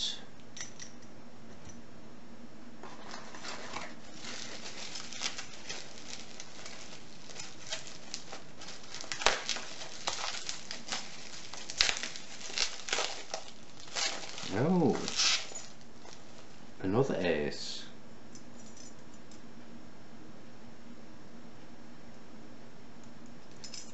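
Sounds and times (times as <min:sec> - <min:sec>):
padlocks and tools clicking: 0:00.5 - 0:01.8
packaging rustling and crinkling: 0:02.8 - 0:16.8.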